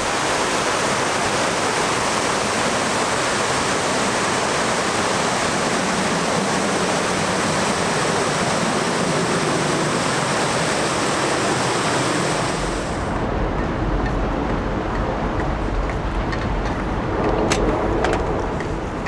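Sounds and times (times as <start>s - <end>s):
falling water rushing: 0.0s - 13.4s
low rumble: 13.0s - 19.0s.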